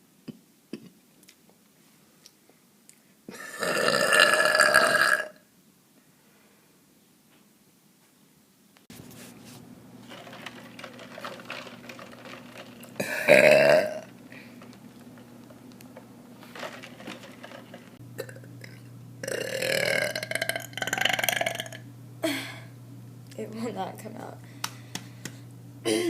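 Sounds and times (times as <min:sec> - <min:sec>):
woman burping: 0:03.3 - 0:05.4, 0:13.0 - 0:14.1, 0:18.2 - 0:22.7.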